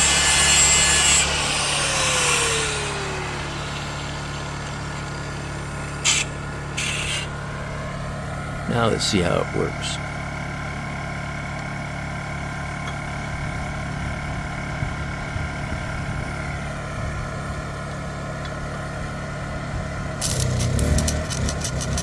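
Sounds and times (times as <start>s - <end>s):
portable generator engine running: 0.0s - 22.0s
irregular crackling: 20.2s - 22.0s.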